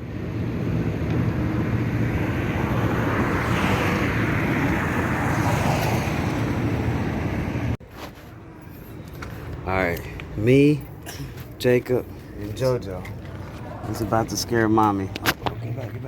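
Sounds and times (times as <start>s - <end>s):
car engine hum: 0.0s - 7.8s.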